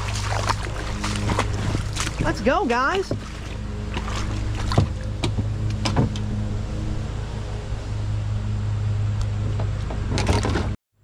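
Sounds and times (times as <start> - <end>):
low mechanical hum: 0.0 - 10.8.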